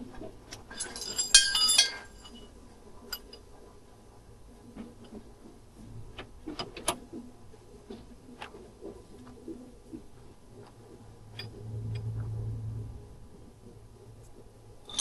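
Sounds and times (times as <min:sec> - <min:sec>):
metal hand tools clinking: 0:00.6 - 0:02.5.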